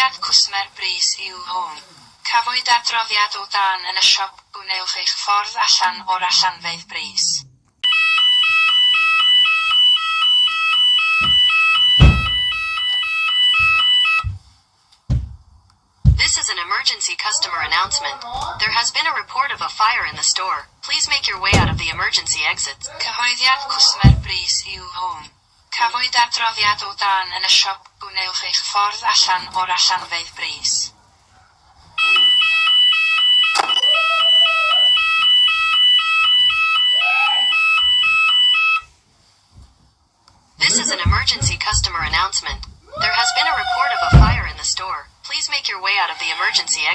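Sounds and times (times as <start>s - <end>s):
two-tone fire alarm: 7.8s - 14.4s, 21.0s - 24.6s, 32.0s - 39.0s
dull thumps: 11.2s - 12.8s, 13.6s - 16.6s, 17.4s - 25.0s, 40.6s - 44.9s.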